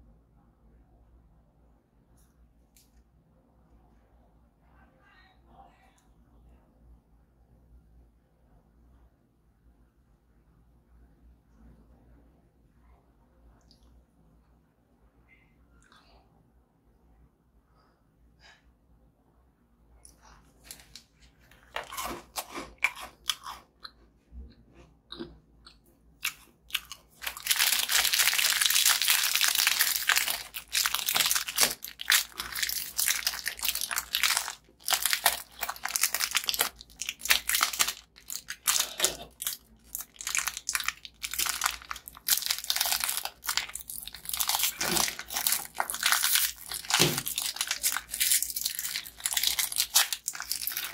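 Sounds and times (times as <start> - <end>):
biscuit wrappers crackling: 20.6 - 23.1, 26.2 - 50.9.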